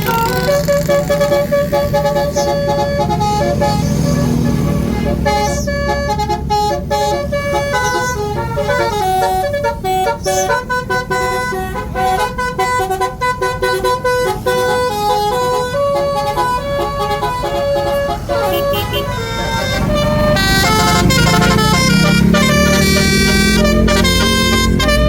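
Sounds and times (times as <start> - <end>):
low engine noise: 0.0 - 25.0
musical air horn melody: 0.0 - 25.0.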